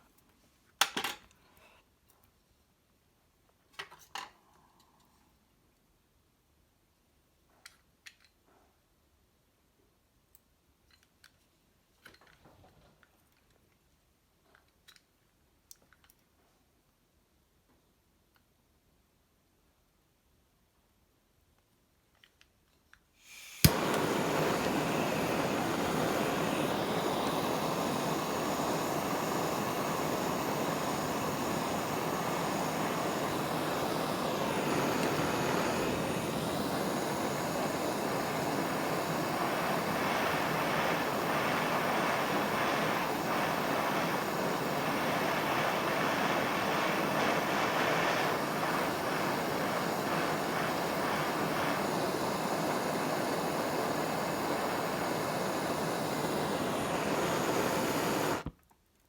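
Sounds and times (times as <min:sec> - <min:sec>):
torch flame hissing: 0:23.2 - 0:58.5
gas torch ignition click: 0:23.2 - 0:58.6.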